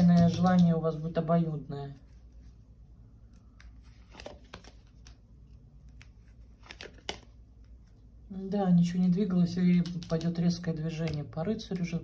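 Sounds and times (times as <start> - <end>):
cards clicking and rustling: 0.0 - 1.0, 3.4 - 7.9, 9.7 - 11.9
low steady hum: 0.0 - 12.0.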